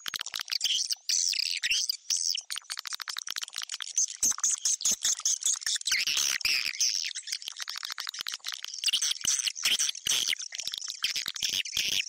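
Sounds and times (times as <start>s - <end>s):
swiftlets twittering and chirping: 3.4s - 12.0s.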